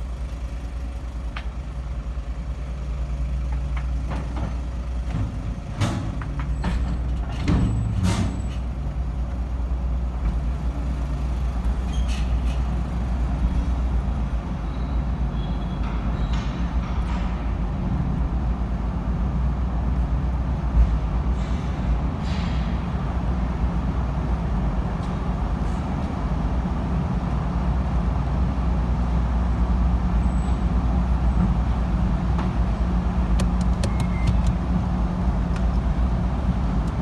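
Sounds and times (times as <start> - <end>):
van engine rumbling: 0.0 - 37.0.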